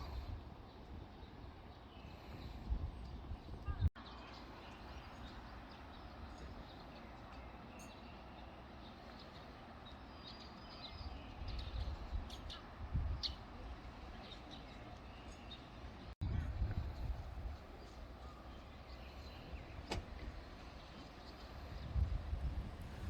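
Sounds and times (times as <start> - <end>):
faint bird chirps: 17.5 - 19.9.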